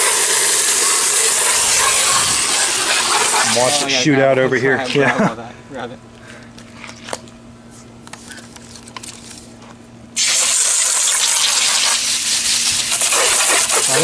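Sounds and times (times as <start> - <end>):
hose nozzle spraying water: 0.0 - 3.8, 10.2 - 14.0.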